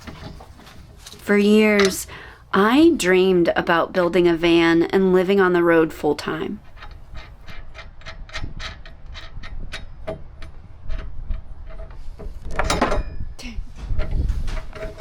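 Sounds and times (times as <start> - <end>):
scraping rustle: 0.0 - 1.8, 13.7 - 15.0.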